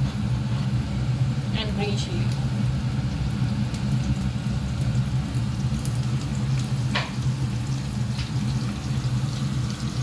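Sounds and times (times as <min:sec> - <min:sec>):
steady low hum: 0:00.0 - 0:10.0
garlic sizzling in oil: 0:01.8 - 0:10.0
crackles and pops: 0:03.5 - 0:08.8.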